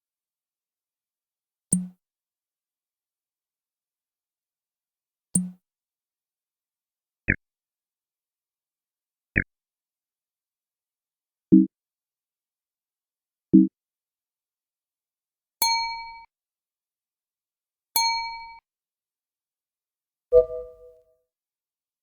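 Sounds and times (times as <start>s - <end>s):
electronic blips: 20.3s - 21.0s
bell-like ding: 20.3s - 21.1s.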